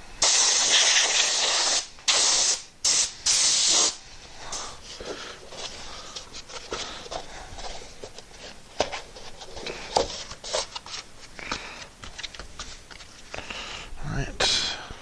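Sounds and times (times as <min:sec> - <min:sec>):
air blow gun hissing: 0:00.2 - 0:04.7
taps and rustles of handling: 0:04.9 - 0:13.5.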